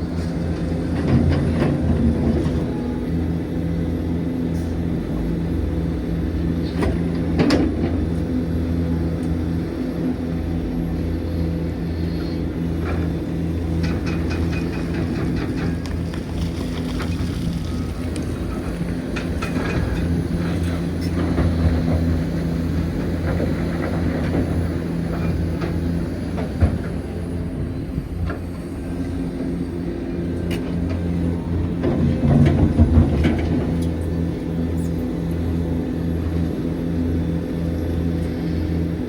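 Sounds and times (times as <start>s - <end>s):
excavator diesel engine running: 0.0s - 39.0s
machine knocks and clanks: 13.7s - 17.6s, 31.8s - 34.2s.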